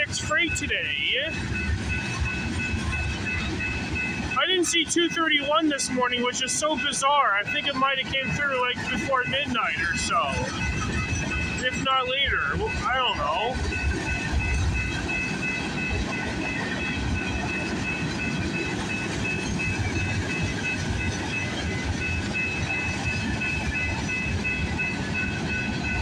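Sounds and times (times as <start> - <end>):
pulsing high tones: 0.0 - 26.0
train wheels rumbling on rails: 0.0 - 26.0.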